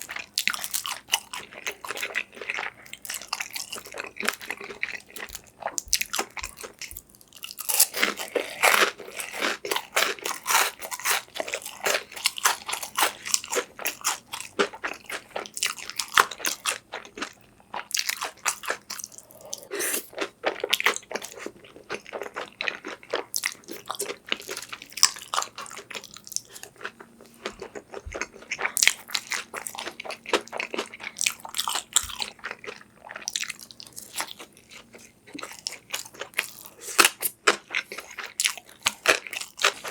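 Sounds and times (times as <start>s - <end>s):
person chewing and crunching food: 0.0s - 39.9s.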